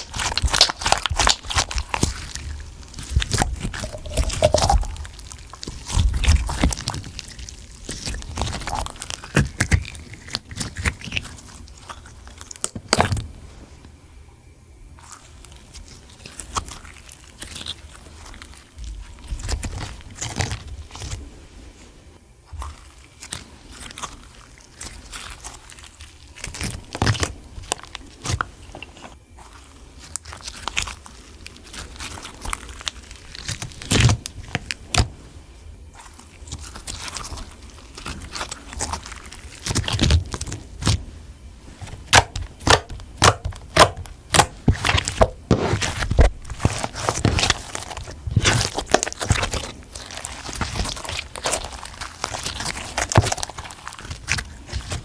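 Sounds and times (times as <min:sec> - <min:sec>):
slime squished by hand: 0:00.0 - 0:13.2, 0:41.7 - 0:55.0.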